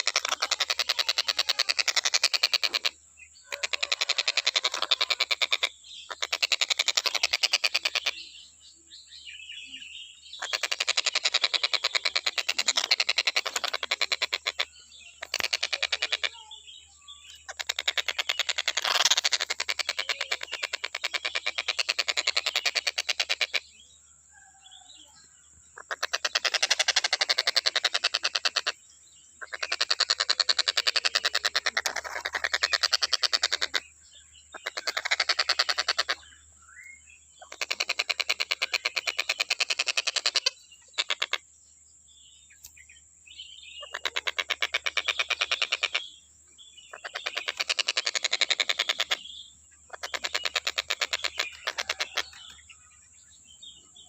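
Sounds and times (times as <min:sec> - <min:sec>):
kingfisher rattling trills: 0:00.0 - 0:08.1, 0:10.4 - 0:16.4, 0:17.3 - 0:23.6, 0:25.8 - 0:28.8, 0:29.4 - 0:33.8, 0:34.5 - 0:36.2, 0:46.9 - 0:49.2, 0:49.9 - 0:52.8.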